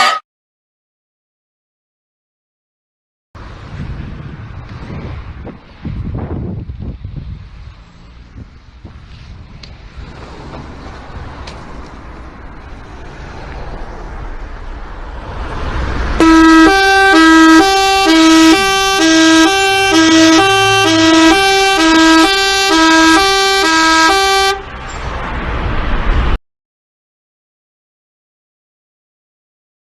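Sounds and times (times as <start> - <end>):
musical bus air horn: 0.0 - 0.2, 16.2 - 24.8
rush of noise: 3.4 - 21.2, 24.6 - 26.4.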